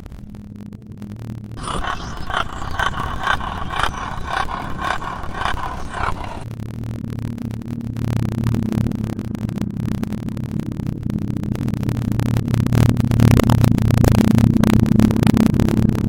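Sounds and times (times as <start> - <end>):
dense crackling: 1.6 - 6.4
low hum: 1.6 - 6.4.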